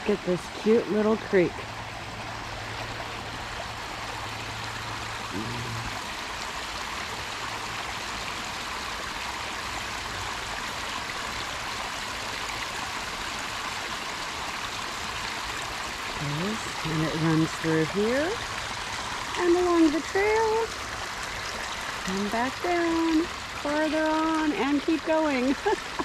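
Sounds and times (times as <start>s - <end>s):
creek water flowing: 0.0s - 26.0s.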